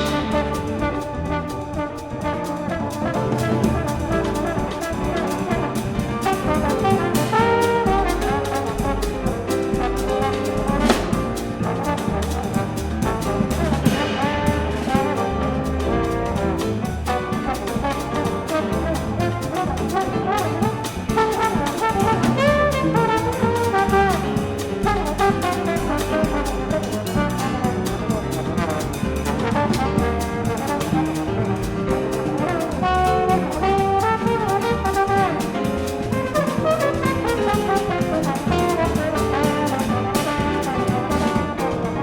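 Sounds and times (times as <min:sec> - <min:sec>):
drum kit keeping time: 0:00.0 - 0:42.0
piano: 0:00.0 - 0:42.0
trombone playing jazz: 0:00.0 - 0:42.0
upright bass: 0:00.0 - 0:42.0.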